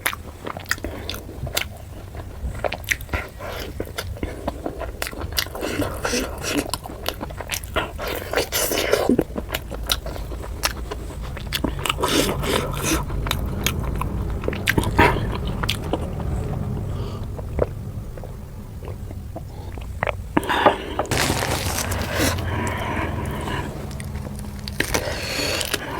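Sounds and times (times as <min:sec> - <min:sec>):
person chewing food: 0:00.0 - 0:13.8
low steady hum: 0:09.1 - 0:25.9.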